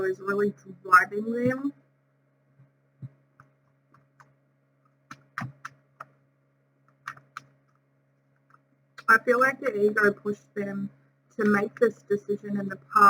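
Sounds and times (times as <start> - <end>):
faint low electrical hum: 0.0 - 13.0
light clicks and taps: 6.8 - 9.1.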